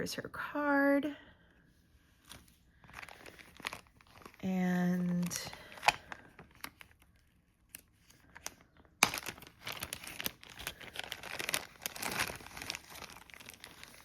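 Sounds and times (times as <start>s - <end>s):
packaging crinkling and rustling: 2.2s - 14.0s
packaging clicks: 7.7s - 14.0s.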